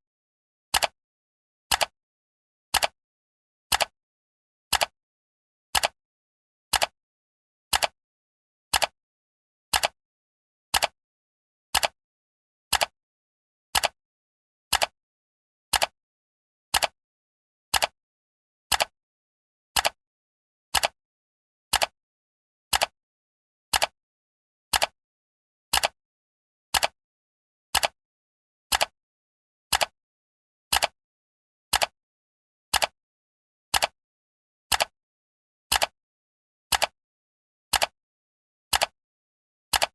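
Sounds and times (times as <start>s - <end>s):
clock ticking: 34.7s - 34.9s.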